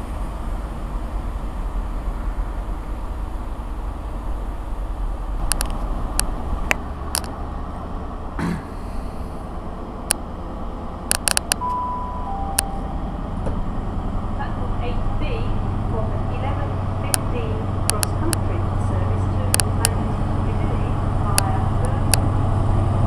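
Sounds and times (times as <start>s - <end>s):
trains rumbling: 0.0s - 23.0s
sharp clicks and metallic knocks: 5.4s - 7.4s, 11.1s - 11.7s, 17.1s - 18.5s, 19.5s - 20.0s
two-note tone: 11.6s - 13.4s.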